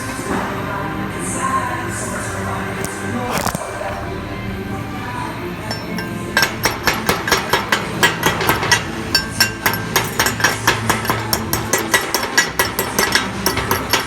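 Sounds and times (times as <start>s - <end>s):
hammer striking metal: 5.7s - 14.0s.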